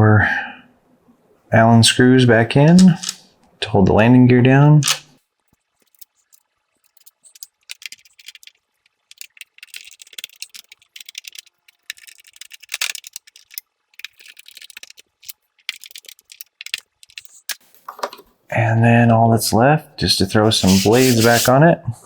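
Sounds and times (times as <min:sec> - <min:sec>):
hex key clicking on screws: 0:02.7 - 0:03.2, 0:04.8 - 0:05.0, 0:06.9 - 0:08.5, 0:09.1 - 0:17.6.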